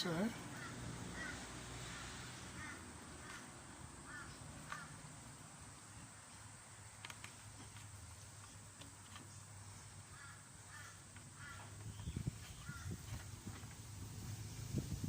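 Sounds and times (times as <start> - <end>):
crows cawing: 0.5 - 5.1, 10.1 - 11.8, 12.6 - 13.0.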